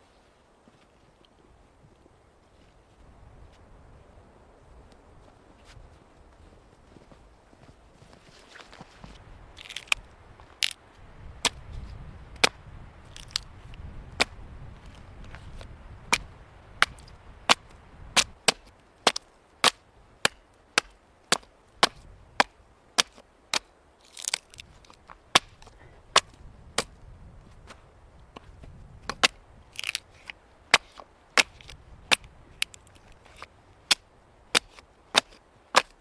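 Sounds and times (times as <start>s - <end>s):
wind rumble: 8.9s - 18.4s, 24.6s - 30.5s.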